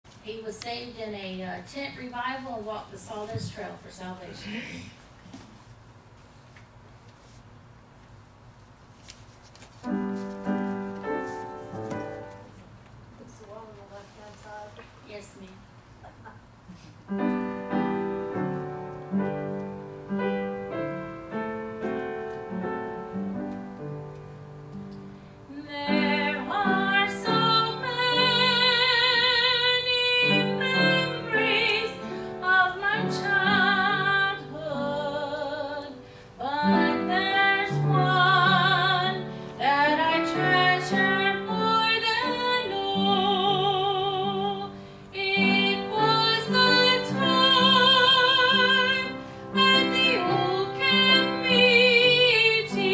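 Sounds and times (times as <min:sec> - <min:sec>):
gospel piano: 0:09.7 - 0:12.8, 0:16.0 - 0:52.9
woman singing with vibrato: 0:25.5 - 0:52.9.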